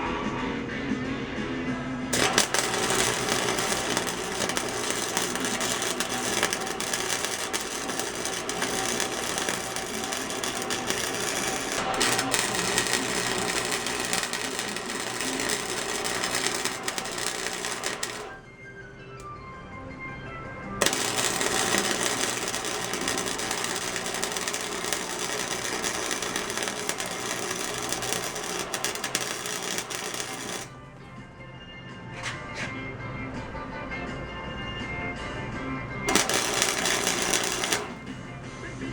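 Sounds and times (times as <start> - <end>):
welder arc crackling: 2.2 - 18.4, 20.8 - 30.8, 36.1 - 38.2.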